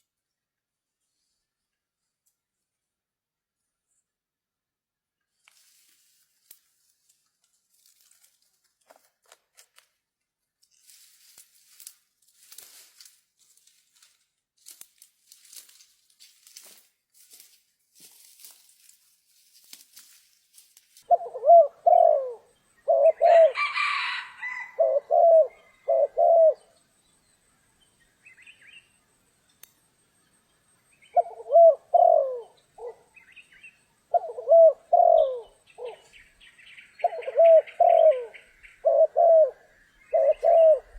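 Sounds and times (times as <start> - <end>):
rustling: 5.4 - 9.9, 10.6 - 21.1
dove cooing: 21.1 - 26.8, 31.1 - 33.2, 34.1 - 36.3, 37.0 - 40.9.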